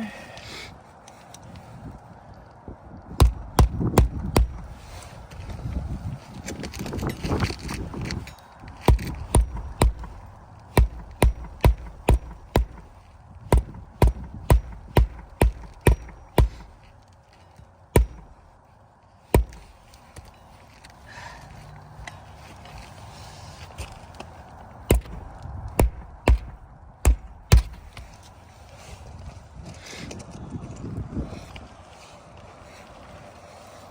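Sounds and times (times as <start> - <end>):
hammer striking nails: 3.2 - 4.7, 8.8 - 16.9, 17.9 - 18.4, 19.4 - 19.7, 24.9 - 28.1.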